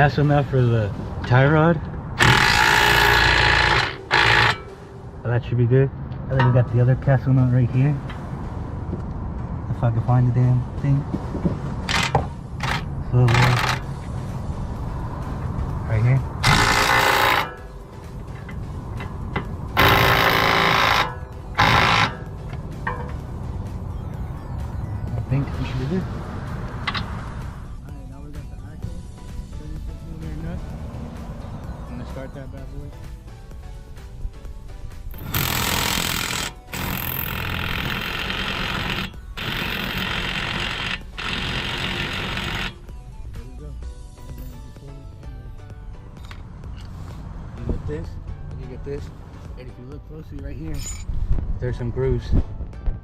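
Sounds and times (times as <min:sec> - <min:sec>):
impact wrench bursts: 0:02.2 - 0:04.8, 0:11.9 - 0:13.9, 0:16.4 - 0:17.7, 0:19.8 - 0:23.0, 0:35.1 - 0:42.8.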